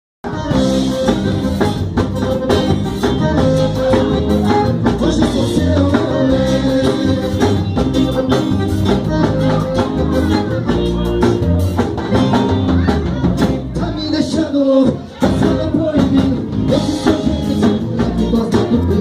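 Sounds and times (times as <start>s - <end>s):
band playing instrumental music: 0.2s - 19.0s
drum-kit beat: 0.2s - 19.0s.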